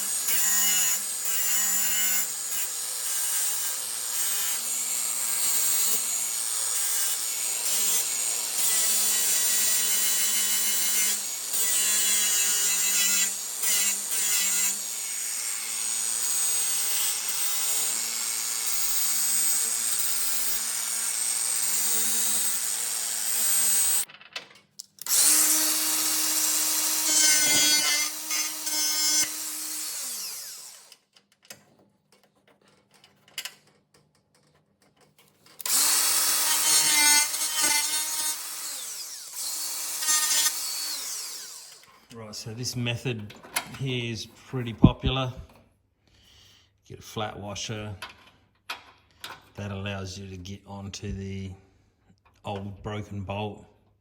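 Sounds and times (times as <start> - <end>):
power tool motor cutting: 0.0 - 24.1, 25.0 - 31.0, 35.6 - 42.0.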